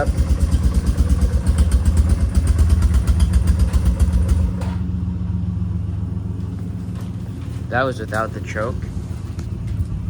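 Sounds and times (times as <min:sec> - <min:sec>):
four-wheeler engine running: 0:00.0 - 0:10.0.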